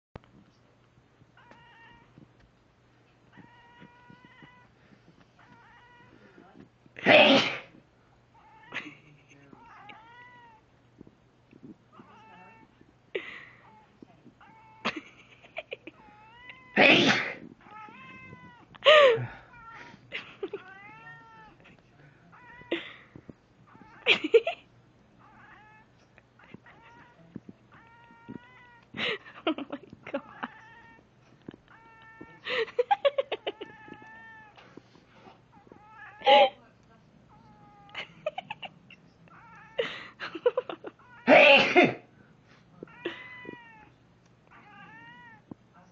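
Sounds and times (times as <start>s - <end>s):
cat meowing and yowling: 1.4s - 2.2s, 3.3s - 4.7s, 5.4s - 6.3s, 9.6s - 10.6s, 17.6s - 20.0s, 20.6s - 21.6s, 25.2s - 25.9s, 26.5s - 28.8s, 31.7s - 32.4s, 42.9s - 45.5s
cat sneezing: 7.0s - 7.8s, 16.7s - 17.5s, 41.2s - 42.1s.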